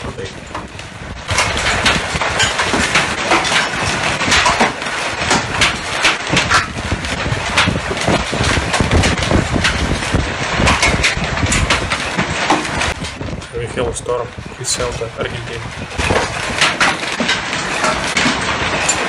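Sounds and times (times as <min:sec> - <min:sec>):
hailstones striking hard surfaces: 0:00.0 - 0:19.0.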